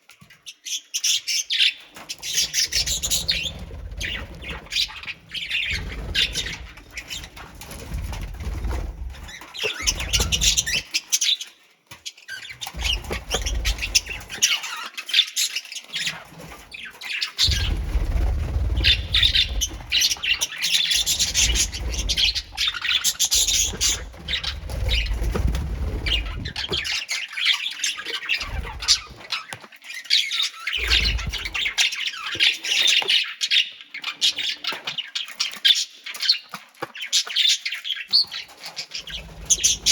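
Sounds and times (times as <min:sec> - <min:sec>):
birds chirping and squawking: 0:00.7 - 0:39.9
low rumble: 0:17.5 - 0:20.4, 0:30.8 - 0:31.8.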